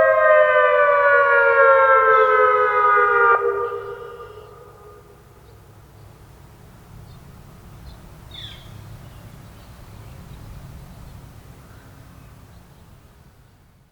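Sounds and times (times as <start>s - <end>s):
bird chirps: 7.0s - 13.0s.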